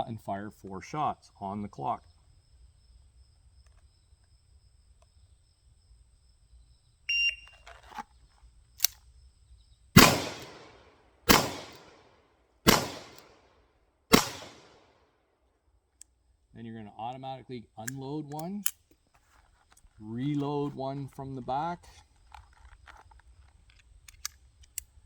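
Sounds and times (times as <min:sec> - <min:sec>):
shot timer beep: 0:07.1 - 0:07.5
revolver gunshots: 0:10.0 - 0:12.0, 0:12.7 - 0:13.4, 0:14.1 - 0:14.9.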